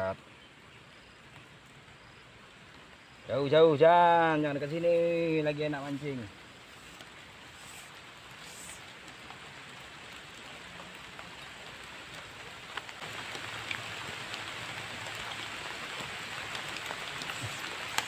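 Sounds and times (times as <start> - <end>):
rain falling: 0.0 - 18.0
raindrops ticking on surfaces: 0.0 - 18.0.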